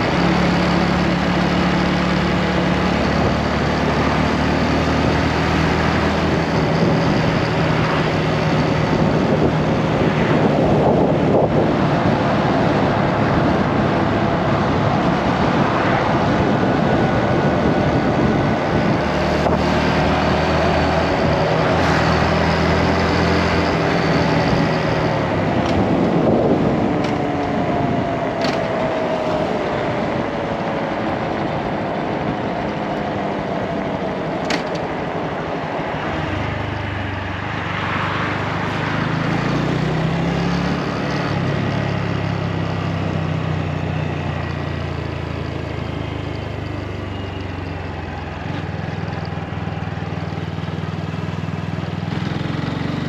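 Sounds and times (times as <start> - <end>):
wind noise on microphone: 0.0 - 44.4
motorcycle engine running: 38.4 - 53.0.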